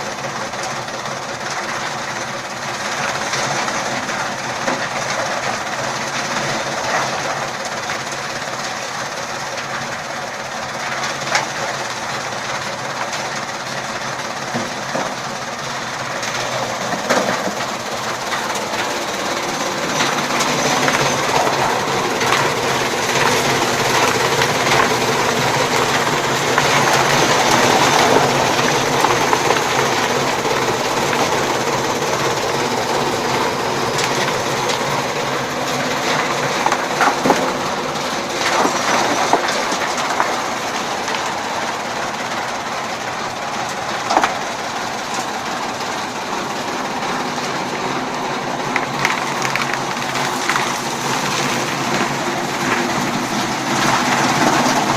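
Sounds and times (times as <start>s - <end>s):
chaff cutter humming: 16.2s - 42.8s.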